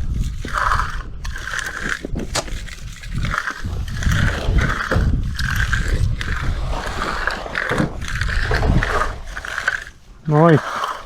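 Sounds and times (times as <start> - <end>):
tool scraping fresh concrete: 0.0 - 11.0
low rumble: 2.9 - 10.3.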